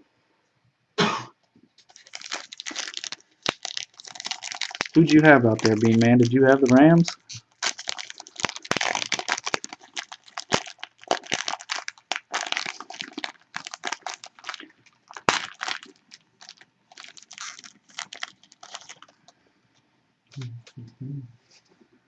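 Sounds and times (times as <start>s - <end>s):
card packaging crinkling: 1.8s - 19.2s.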